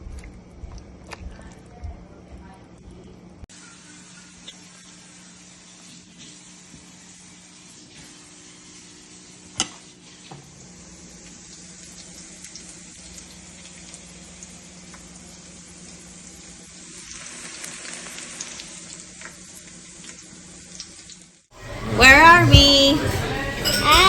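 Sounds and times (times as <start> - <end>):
food sizzling in frying pan: 3.5 - 21.5.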